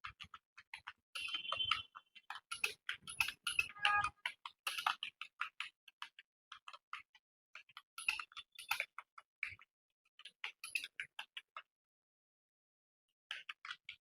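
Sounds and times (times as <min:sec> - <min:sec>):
keyboard typing clicks: 0:01.2 - 0:04.2.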